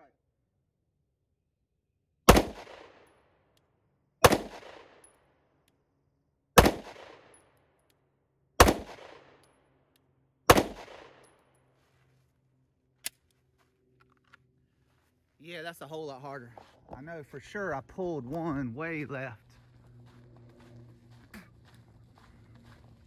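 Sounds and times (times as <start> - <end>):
pistol shots with ringing echo: 2.3 - 3.3, 4.2 - 5.2, 6.6 - 7.5, 8.6 - 9.5, 10.5 - 11.4.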